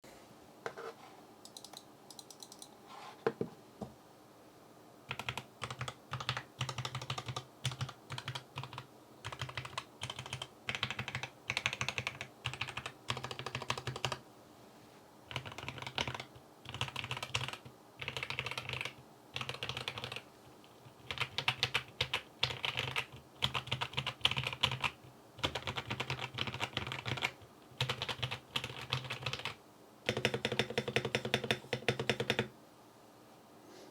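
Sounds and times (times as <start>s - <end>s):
mechanical keyboard typing: 1.5s - 2.7s, 5.1s - 14.2s, 15.3s - 20.2s, 21.0s - 32.5s.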